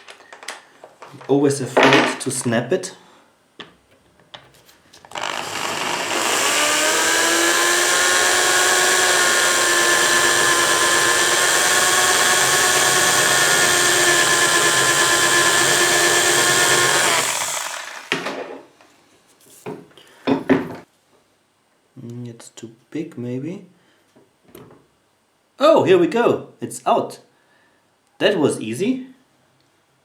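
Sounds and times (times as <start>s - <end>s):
electric drill drilling into metal: 5.1s - 18.4s.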